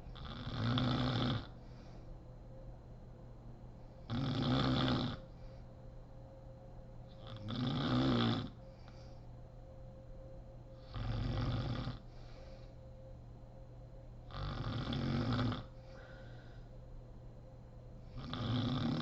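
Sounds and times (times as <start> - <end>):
faint steady hum: 0.0 - 19.0
woman snoring loudly: 0.2 - 1.5, 4.1 - 5.2, 7.3 - 8.6, 10.8 - 12.0, 14.3 - 15.7, 18.2 - 19.0
faint breaths: 1.4 - 2.5, 5.2 - 6.0, 8.4 - 9.6, 10.7 - 13.1, 14.4 - 16.9.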